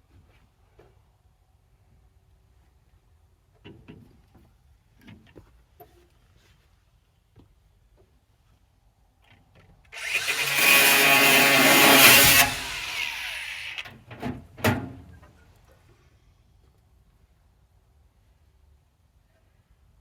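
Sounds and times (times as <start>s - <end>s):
power tool running: 10.0s - 13.8s.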